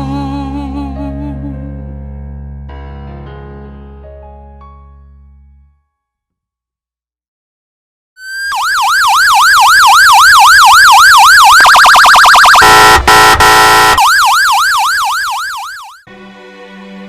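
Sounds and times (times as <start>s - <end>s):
electronic police siren: 8.2s - 16.1s
harsh steady horn tone: 12.5s - 14.1s.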